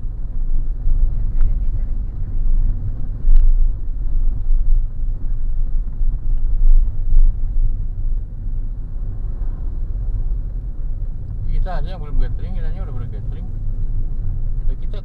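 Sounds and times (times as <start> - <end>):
car engine and tyres rumbling: 0.0 - 15.0.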